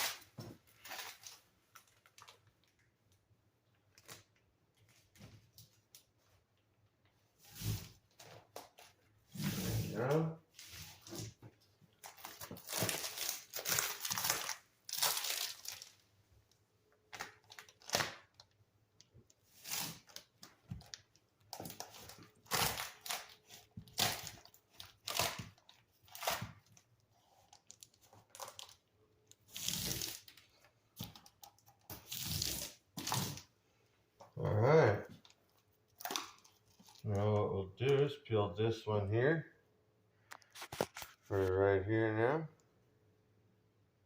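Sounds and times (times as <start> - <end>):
mat sheets crinkling and tearing: 0.0 - 2.8, 3.9 - 5.7, 7.5 - 16.0, 17.1 - 18.6, 19.4 - 31.3, 40.4 - 41.5.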